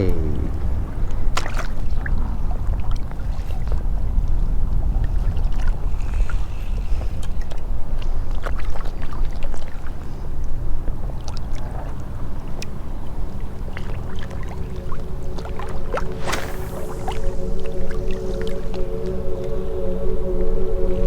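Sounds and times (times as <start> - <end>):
steady low rumble: 12.1 - 21.0
music: 13.3 - 21.0.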